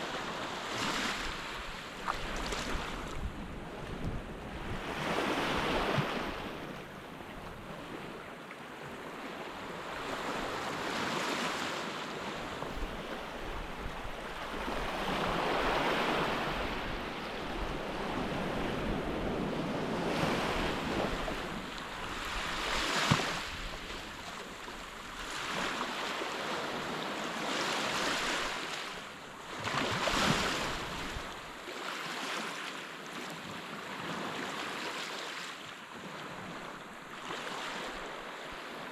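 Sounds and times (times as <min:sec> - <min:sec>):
wind on microphone: 0:00.8 - 0:08.1, 0:12.2 - 0:24.3, 0:29.7 - 0:31.5.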